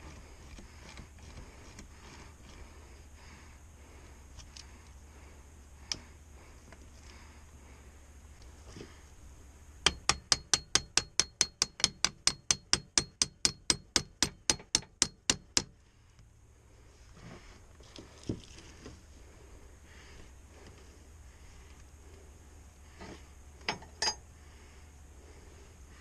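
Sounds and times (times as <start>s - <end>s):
hammer striking metal: 9.8s - 15.7s.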